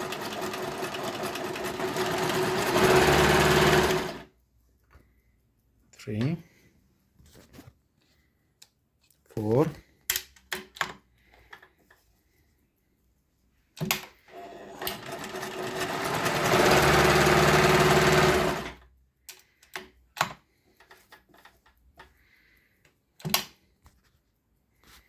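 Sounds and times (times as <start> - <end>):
sewing machine running: 0.0 - 4.3, 14.3 - 18.8.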